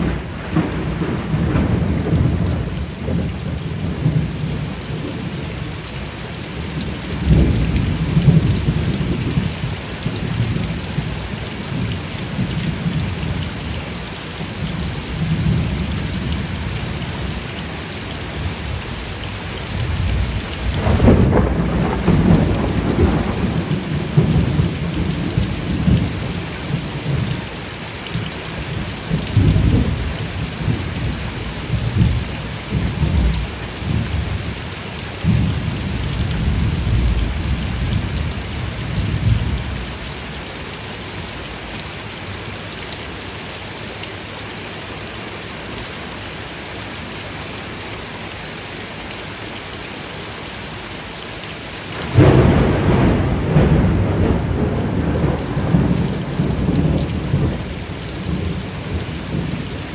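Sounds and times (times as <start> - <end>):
low rolling thunder: 0.0 - 5.6, 7.1 - 13.7, 19.8 - 27.3, 28.7 - 34.6, 35.2 - 40.3, 51.9 - 59.9
steady rain falling: 0.0 - 59.9.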